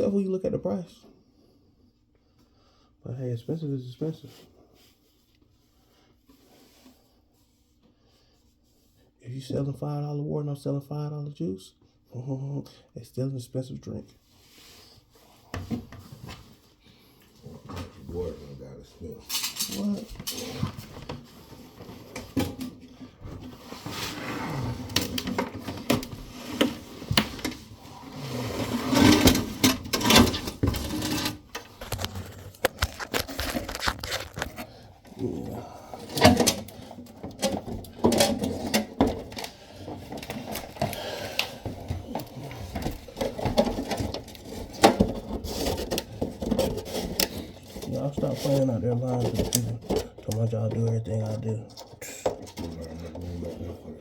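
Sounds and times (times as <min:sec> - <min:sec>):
parts and tools knocking and scraping: 0:19.2 - 0:34.7, 0:35.9 - 0:51.0, 0:51.8 - 0:53.6.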